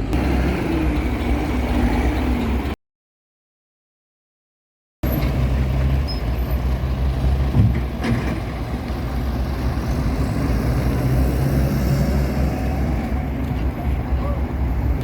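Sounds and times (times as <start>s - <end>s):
truck engine running: 0.0s - 2.8s.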